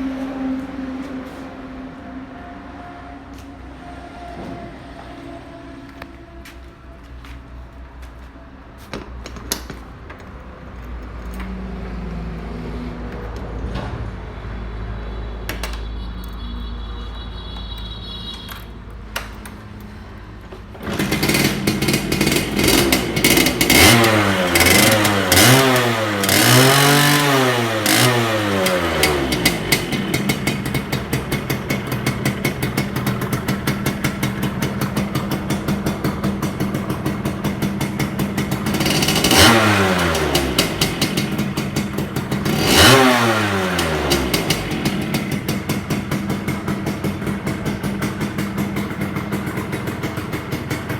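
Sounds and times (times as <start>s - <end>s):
two-stroke motorcycle engine revving: 20.8s - 50.9s.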